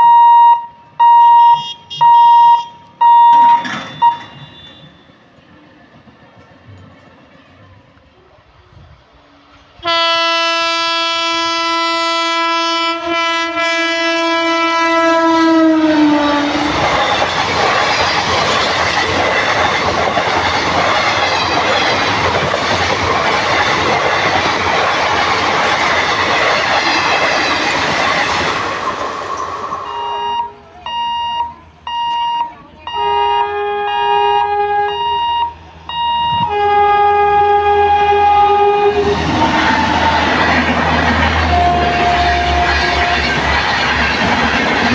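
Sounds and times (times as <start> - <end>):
locomotive horn blasts: 0.0 - 5.2, 9.8 - 17.3, 29.8 - 39.6, 41.4 - 43.4
train wheels rushing on rails: 2.6 - 10.4, 12.4 - 32.3, 35.2 - 44.9.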